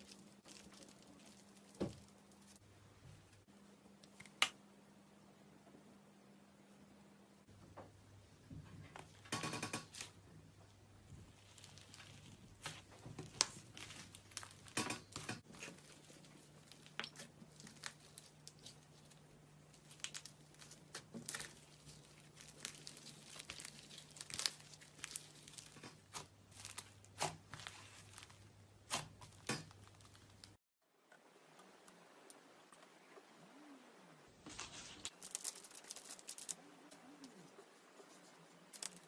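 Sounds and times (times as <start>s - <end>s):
slime crackling and popping: 11.3s - 28.3s.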